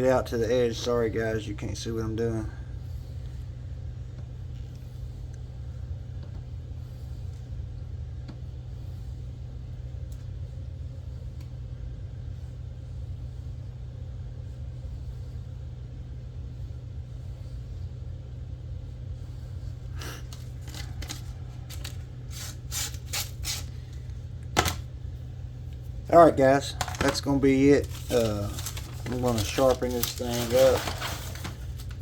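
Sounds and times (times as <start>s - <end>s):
low hum: 0.0s - 32.0s.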